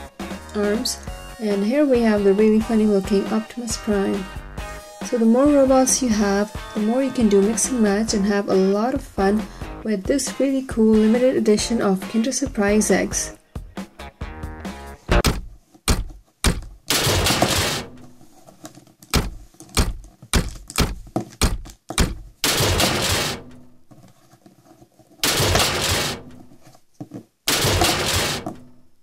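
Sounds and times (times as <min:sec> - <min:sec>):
metal crashes: 0:16.9 - 0:18.0, 0:22.5 - 0:23.5, 0:25.2 - 0:26.4, 0:27.5 - 0:28.7.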